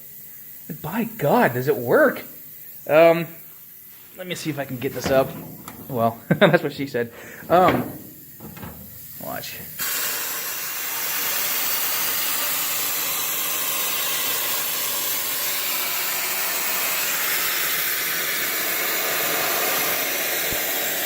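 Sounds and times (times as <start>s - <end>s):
sandblaster hissing: 0.0s - 21.0s.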